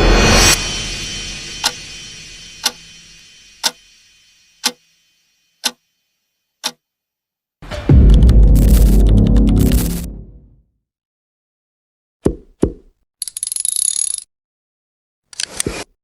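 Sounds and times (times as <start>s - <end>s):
loud swelling whoosh: 0.0s - 4.1s.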